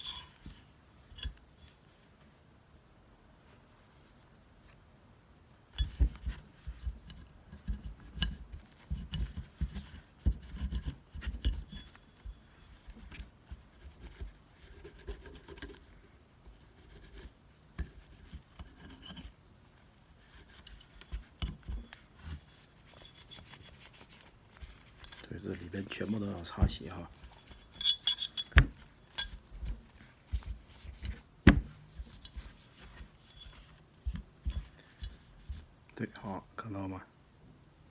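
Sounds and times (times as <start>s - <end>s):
tissue paper scrubbing metal parts: 22.0s - 31.2s.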